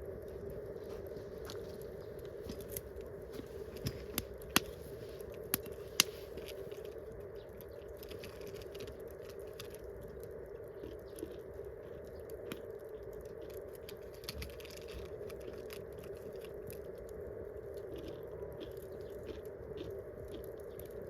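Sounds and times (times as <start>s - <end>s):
low fire hiss: 0.0s - 8.0s
campfire crackling and popping: 1.4s - 19.6s.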